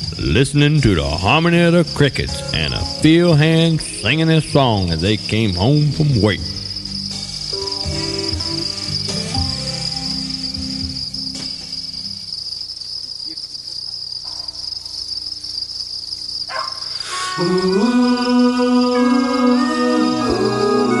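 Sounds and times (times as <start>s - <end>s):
organ chords: 0.0s - 12.4s, 17.0s - 21.0s
crickets chirping: 0.0s - 21.0s
low held tone: 17.2s - 21.0s.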